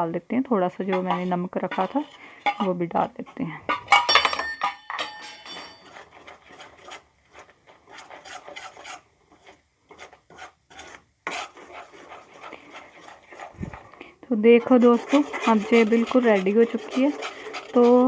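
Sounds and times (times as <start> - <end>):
spoon scraping a pan: 0.5 - 18.0.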